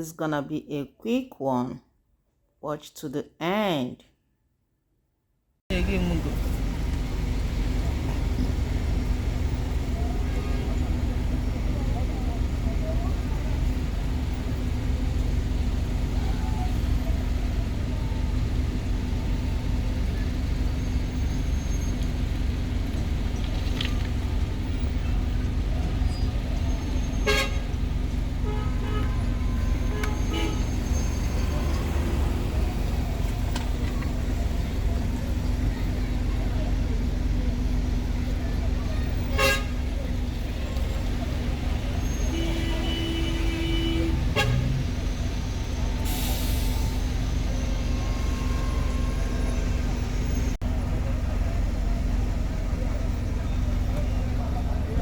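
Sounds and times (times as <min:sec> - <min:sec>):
road traffic rumble: 0:05.7 - 0:55.0
vehicle horn toots: 0:27.1 - 0:27.8, 0:28.4 - 0:32.1, 0:39.3 - 0:39.9, 0:42.0 - 0:44.9.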